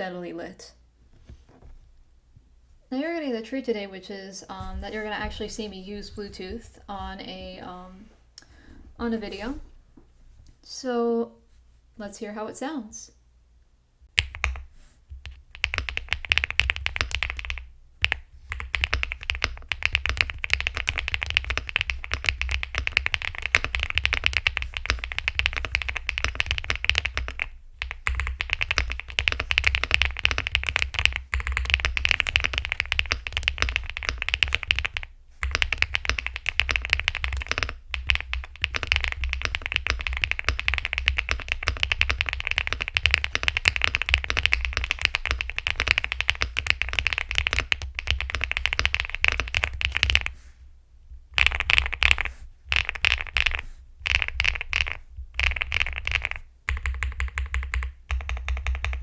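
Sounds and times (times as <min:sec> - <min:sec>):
fast typing on mechanical keyboard: 0:15.2 - 0:50.4, 0:51.4 - 0:59.0.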